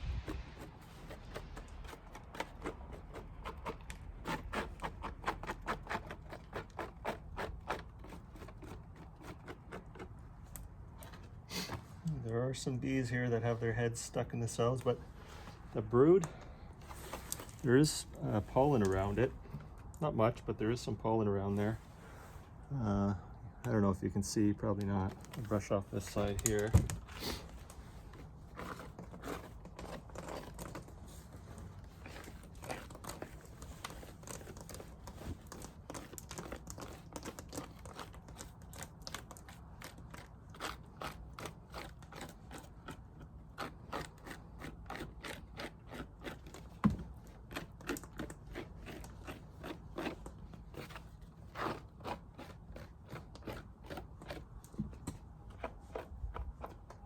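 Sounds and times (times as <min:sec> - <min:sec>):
brush scraping comb frame: 0:24.8 - 0:54.8.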